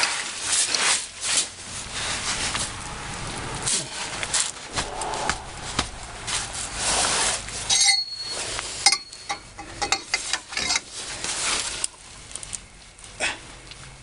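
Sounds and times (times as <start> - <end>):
steel tools clinking on bolts: 7.7 - 10.9.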